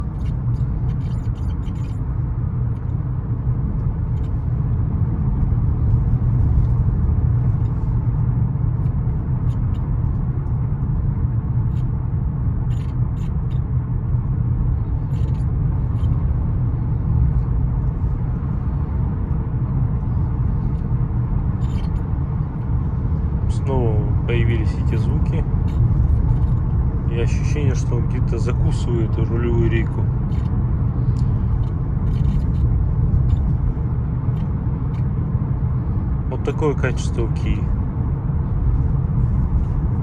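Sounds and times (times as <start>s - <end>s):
steering wheel creaks and clicks: 0.0s - 3.0s, 8.8s - 10.9s, 12.6s - 14.4s, 15.0s - 16.3s, 21.6s - 22.8s, 24.3s - 35.2s
road rumble inside car cabin: 0.0s - 40.0s.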